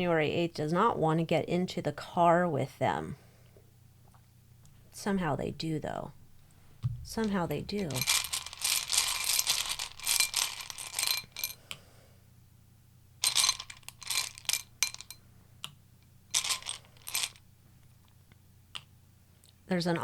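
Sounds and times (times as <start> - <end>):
cards being shuffled: 7.8 - 11.2.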